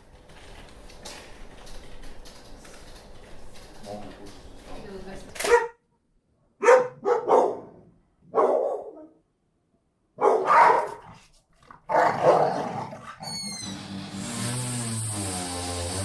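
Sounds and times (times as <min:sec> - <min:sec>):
dog barking: 0:05.4 - 0:05.8, 0:06.6 - 0:09.2, 0:10.2 - 0:11.2, 0:11.9 - 0:12.9.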